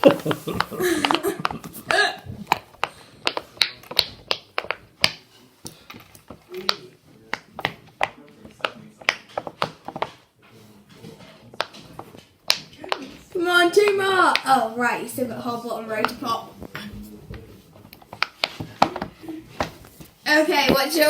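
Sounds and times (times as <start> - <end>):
fidget toy bubbles popping: 2.4 - 5.2.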